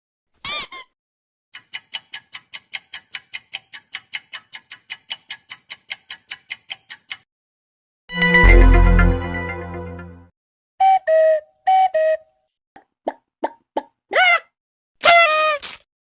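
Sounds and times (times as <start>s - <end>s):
clock ticking: 1.6s - 7.2s.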